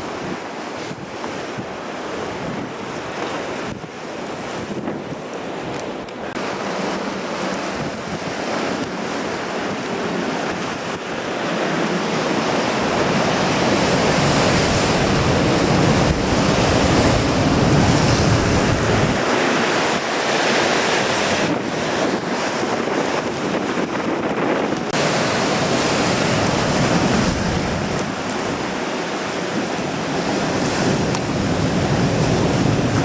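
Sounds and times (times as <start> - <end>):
ocean surf breaking on rocks: 0.0 - 33.0
wind buffeting microphone: 0.0 - 33.0.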